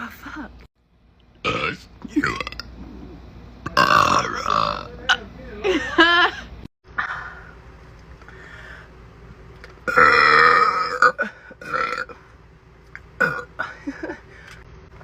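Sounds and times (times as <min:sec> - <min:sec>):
woman burping: 0:01.5 - 0:02.7, 0:03.7 - 0:04.9, 0:09.9 - 0:12.2, 0:13.2 - 0:13.8.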